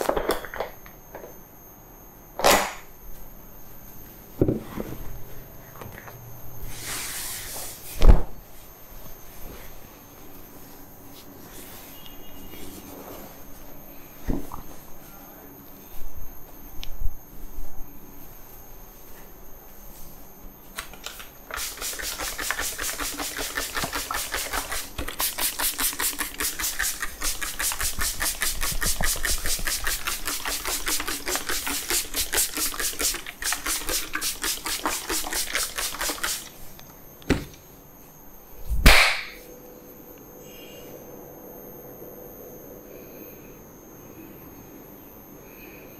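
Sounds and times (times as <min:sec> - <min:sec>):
sharp knock: 0:38.8 - 0:39.4.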